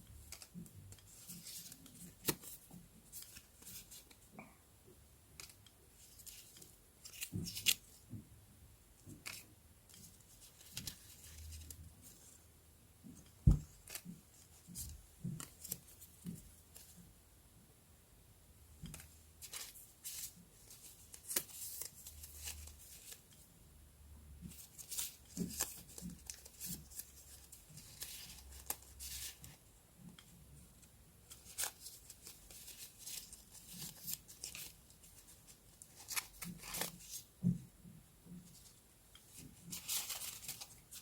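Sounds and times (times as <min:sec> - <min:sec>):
paper rustling and tapping: 0:05.4 - 0:08.3, 0:13.0 - 0:17.0, 0:24.4 - 0:30.4, 0:31.3 - 0:41.0.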